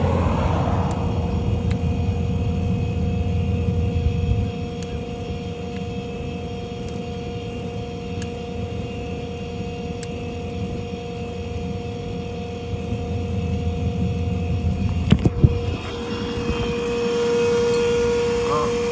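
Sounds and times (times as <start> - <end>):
truck engine rumble: 0.0 - 5.8, 14.6 - 18.9
hydraulic whine: 0.0 - 7.9, 14.7 - 18.9.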